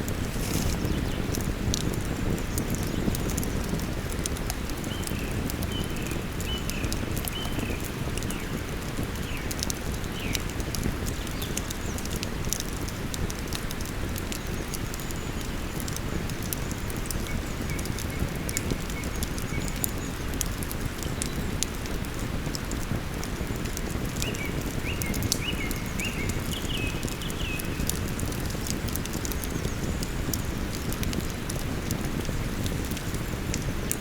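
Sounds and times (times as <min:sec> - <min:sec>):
campfire crackling: 0:00.0 - 0:34.0.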